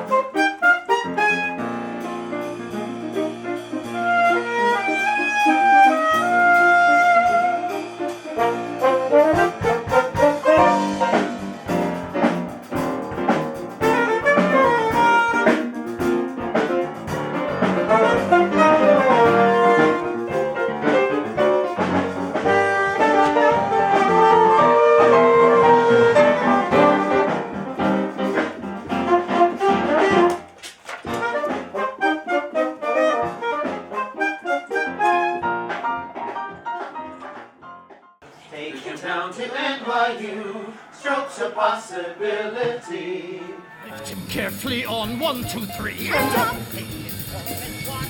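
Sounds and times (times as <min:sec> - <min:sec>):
jazzy brass and piano band: 0:00.0 - 0:38.2, 0:43.5 - 0:48.0.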